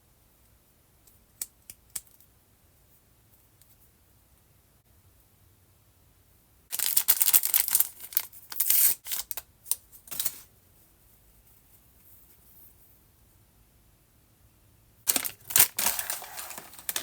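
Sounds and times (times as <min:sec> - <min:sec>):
packaging crinkling and tearing: 0:06.7 - 0:09.4, 0:15.1 - 0:17.0.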